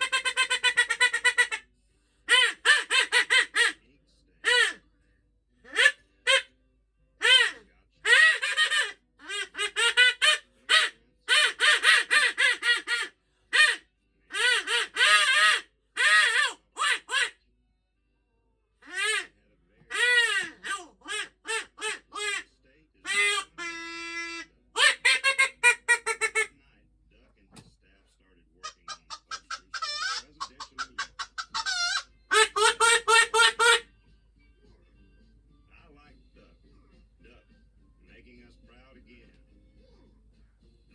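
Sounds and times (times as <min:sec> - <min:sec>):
duck quacking: 0:00.0 - 0:01.6, 0:02.3 - 0:03.8, 0:04.4 - 0:04.8, 0:05.7 - 0:06.5, 0:07.2 - 0:17.4, 0:18.8 - 0:19.3, 0:19.9 - 0:26.5, 0:28.6 - 0:33.9.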